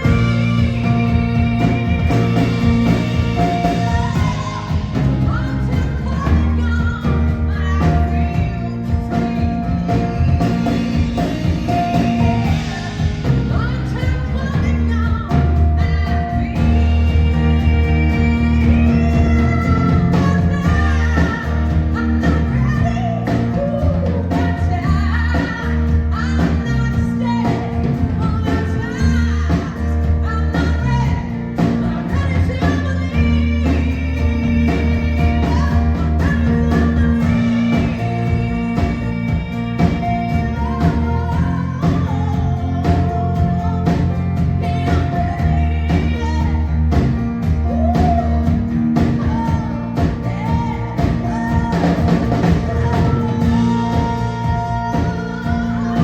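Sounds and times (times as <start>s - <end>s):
live rock band playing: 0.0s - 56.0s.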